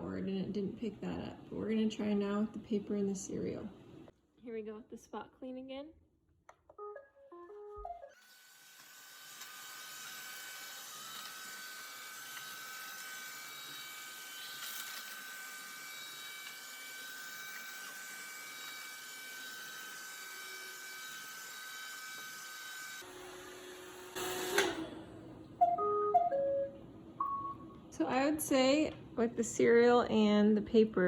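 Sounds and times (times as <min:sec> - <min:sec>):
robot vacuum whine: 0:23.0 - 0:26.0.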